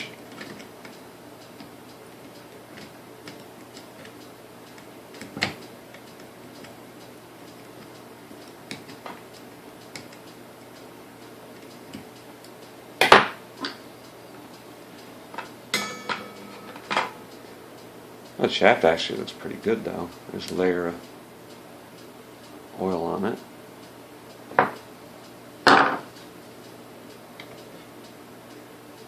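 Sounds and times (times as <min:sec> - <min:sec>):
sharp metal clunk: 0:15.8 - 0:17.2.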